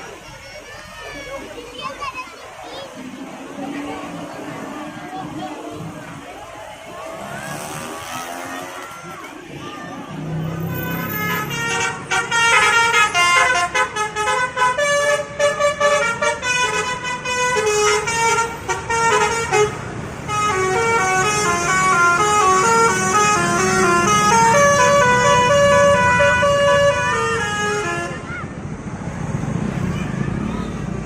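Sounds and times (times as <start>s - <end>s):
multi-tone bus horn melody: 10.6s - 28.3s.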